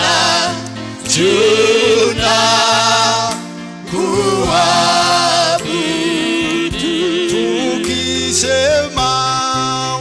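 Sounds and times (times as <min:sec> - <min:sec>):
voices singing gospel song: 0:00.0 - 0:10.0
bass and drums: 0:04.3 - 0:05.3, 0:06.4 - 0:07.2, 0:07.9 - 0:09.8.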